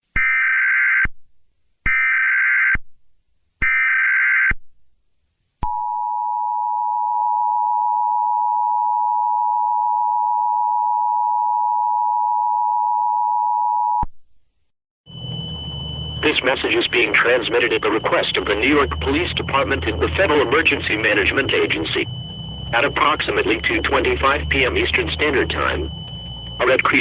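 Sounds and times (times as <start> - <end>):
rapid data tone bursts: 15.1 - 27.0
two-tone attention signal: 15.1 - 27.0.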